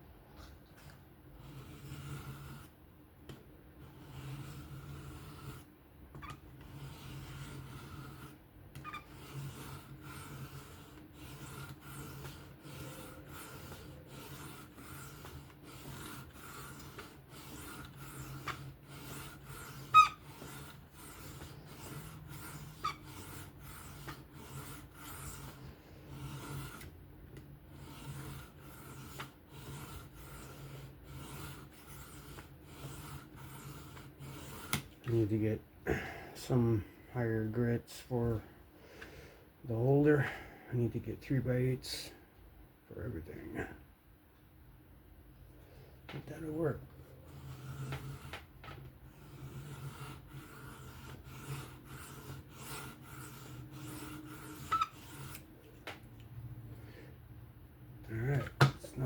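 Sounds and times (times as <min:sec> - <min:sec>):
knife rasping on sharpening plate: 0:06.2 - 0:26.9, 0:49.2 - 0:55.4.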